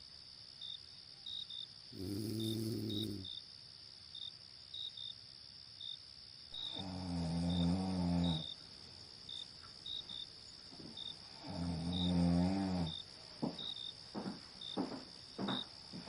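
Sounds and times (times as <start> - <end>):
crickets chirping: 0.0 - 16.0
high insect trill: 0.0 - 16.0
person snoring: 2.0 - 3.3, 6.7 - 8.5, 11.4 - 12.9.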